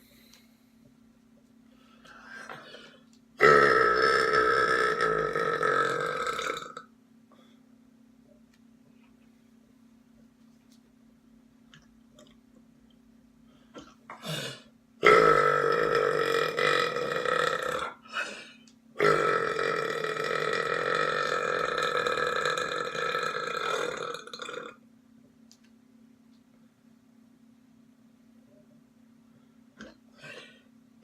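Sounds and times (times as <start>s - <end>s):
person belching loudly: 3.4s - 6.9s, 15.0s - 18.0s, 19.0s - 24.8s
person gulping air: 11.7s - 12.5s, 29.8s - 30.5s.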